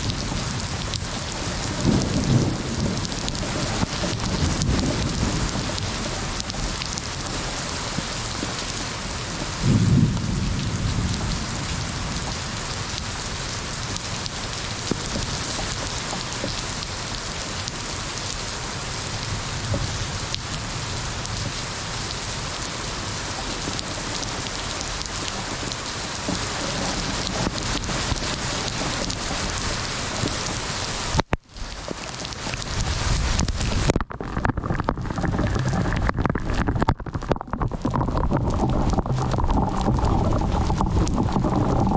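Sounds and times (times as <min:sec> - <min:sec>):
thunder clap and rumble: 0:00.0 - 0:15.9, 0:32.6 - 0:41.9
heavy rain hissing: 0:00.0 - 0:41.9.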